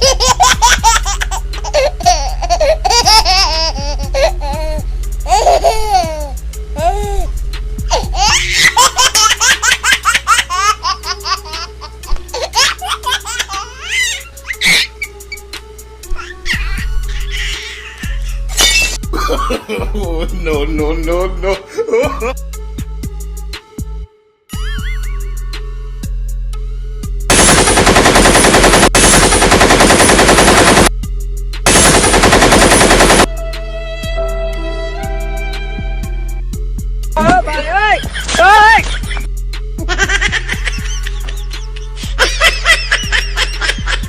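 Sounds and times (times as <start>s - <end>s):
high-pitched laughter: 0.0s - 7.0s, 7.9s - 15.1s, 16.2s - 20.0s, 24.6s - 25.3s, 37.2s - 44.0s
background music: 0.0s - 44.0s
rapid automatic gunfire: 27.3s - 30.9s, 31.7s - 33.3s.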